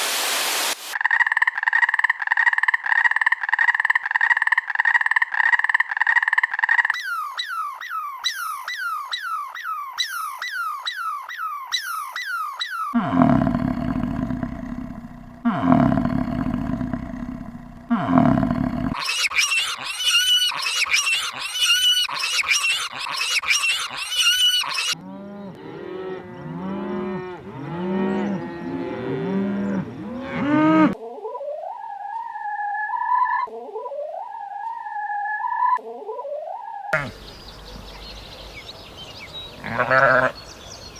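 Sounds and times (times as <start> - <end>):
high repeated animal calls: 0.9 - 25.0, 30.3 - 38.4, 39.6 - 40.5
gliding drawn-out animal calls: 5.6 - 25.0, 30.7 - 37.3
short low animal calls: 12.9 - 25.0, 37.0 - 37.9.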